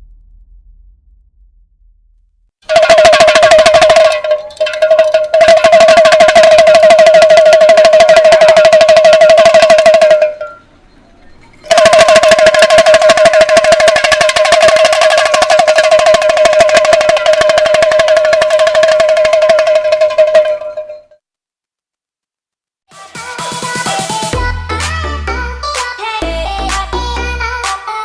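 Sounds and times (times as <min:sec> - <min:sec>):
pellet drum rattling: 0:02.6 - 0:10.6, 0:11.4 - 0:21.2.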